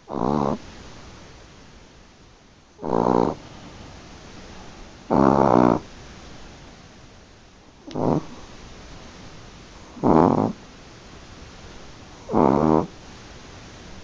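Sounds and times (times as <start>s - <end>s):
dog snoring: 0.1s - 0.6s, 2.8s - 3.4s, 5.1s - 5.9s, 7.9s - 8.4s, 9.9s - 10.6s, 12.2s - 12.9s.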